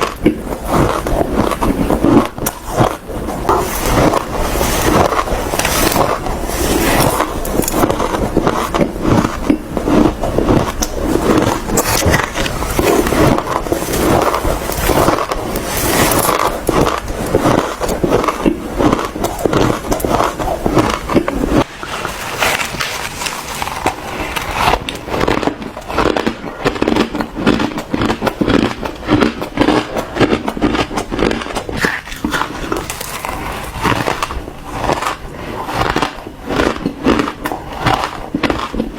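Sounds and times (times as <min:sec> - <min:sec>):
crunching and chewing ice: 0:00.0 - 0:38.9.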